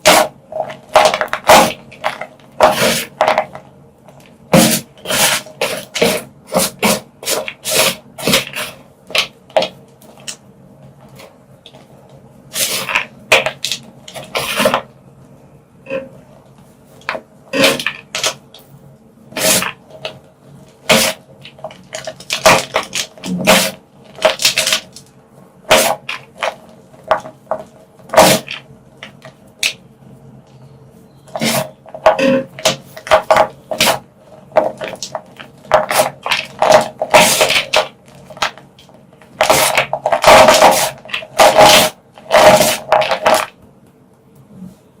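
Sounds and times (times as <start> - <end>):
chalk blocks crushed by hand: 25.7 - 29.8, 31.3 - 38.7, 39.3 - 43.5.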